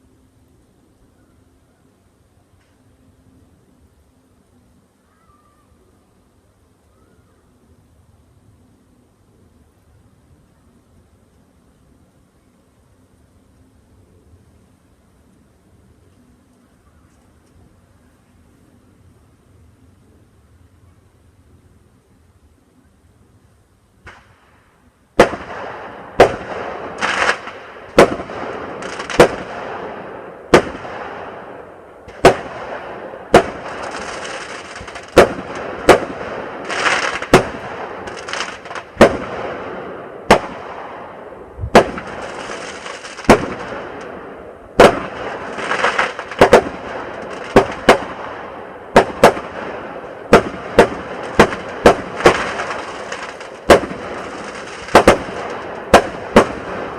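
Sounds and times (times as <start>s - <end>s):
fireworks crackling hiss: 0.0s - 56.9s
fireworks bangs: 25.2s - 56.9s.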